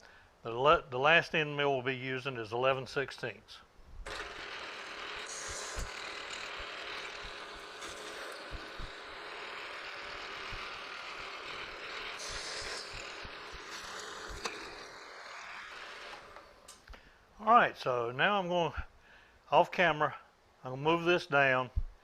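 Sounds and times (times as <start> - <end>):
milling machine whirring: 4.0 - 16.8.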